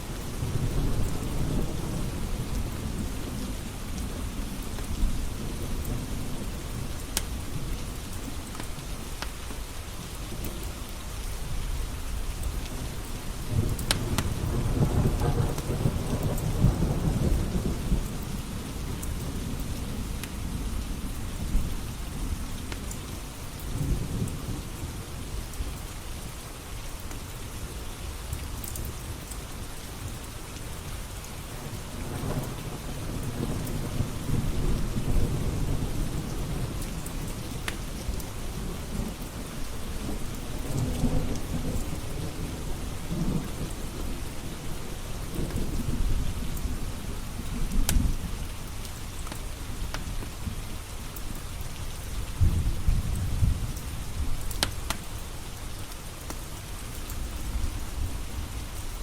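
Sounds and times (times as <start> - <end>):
thunder rumbling: 0.0 - 8.5, 12.3 - 22.5, 31.4 - 48.6, 52.0 - 55.1
steady rain: 0.0 - 59.0
wood fire crackling: 35.7 - 41.5.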